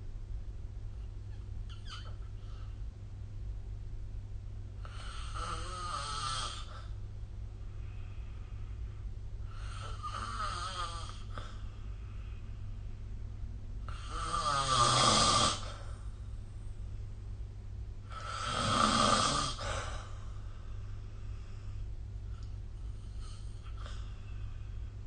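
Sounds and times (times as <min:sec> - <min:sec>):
person snoring: 0:04.9 - 0:06.8, 0:13.9 - 0:15.8, 0:18.1 - 0:20.0.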